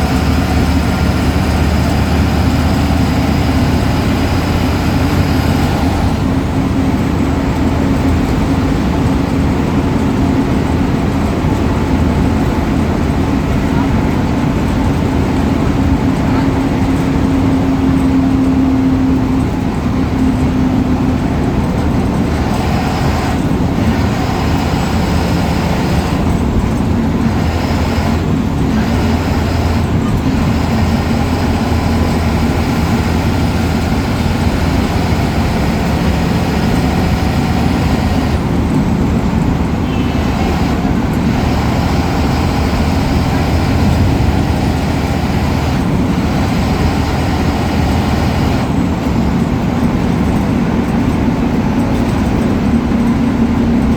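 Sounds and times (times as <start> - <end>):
bus diesel engine running: 0.0 - 53.9
faint turbo whistle: 39.8 - 40.8.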